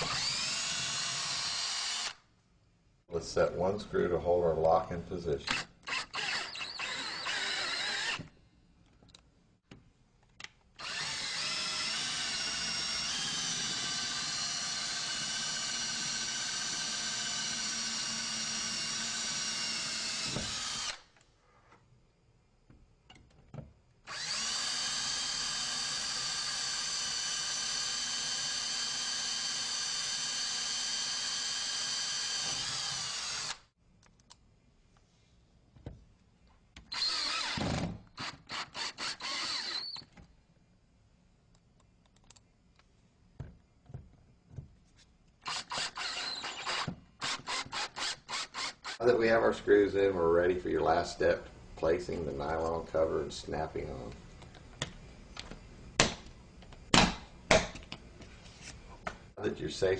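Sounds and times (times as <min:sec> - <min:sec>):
power drill driving screws: 0:00.0 - 0:02.2, 0:05.5 - 0:08.3, 0:10.8 - 0:21.1, 0:24.1 - 0:33.7, 0:36.8 - 0:40.1, 0:45.4 - 0:49.1.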